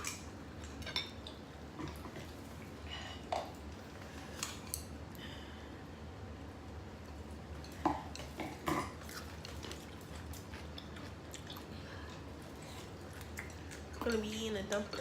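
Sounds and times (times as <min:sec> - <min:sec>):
low room hum: 0:00.0 - 0:15.0
chewing: 0:07.1 - 0:15.0.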